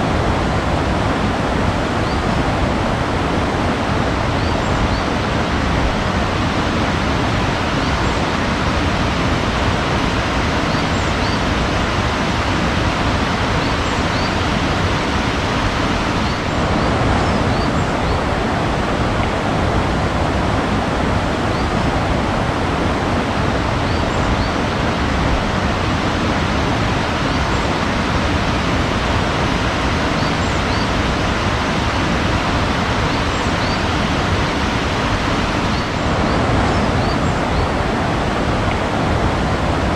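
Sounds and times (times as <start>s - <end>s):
rushing water: 0.0s - 39.9s
faint bird chirps: 10.6s - 11.5s, 30.1s - 31.0s.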